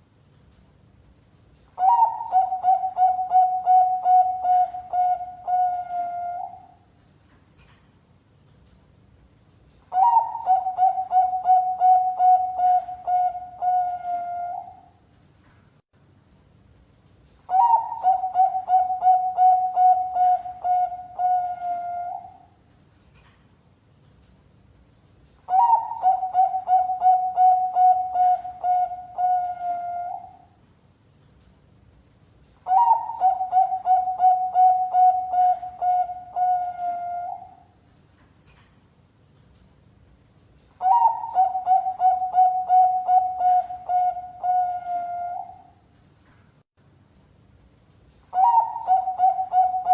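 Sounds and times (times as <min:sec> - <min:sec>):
dove cooing: 0:01.8 - 0:06.8, 0:09.9 - 0:14.9, 0:17.5 - 0:22.5, 0:25.5 - 0:30.5, 0:32.6 - 0:37.7, 0:40.8 - 0:45.7, 0:48.3 - 0:49.9.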